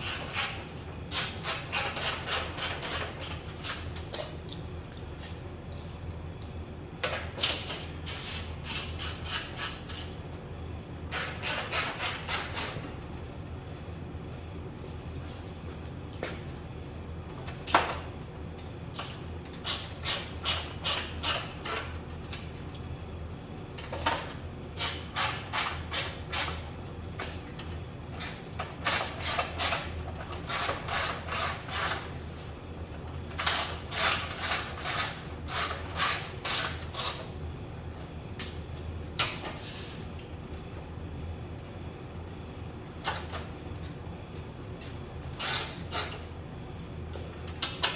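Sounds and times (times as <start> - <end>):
ratchet wrench clicking: 28.2 - 32.1, 33.4 - 37.3.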